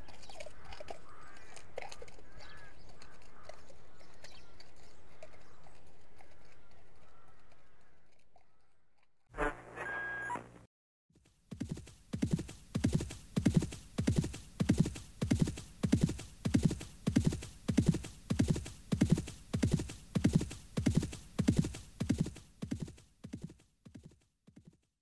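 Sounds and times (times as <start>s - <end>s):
horse hoofbeats trotting: 11.2s - 24.9s.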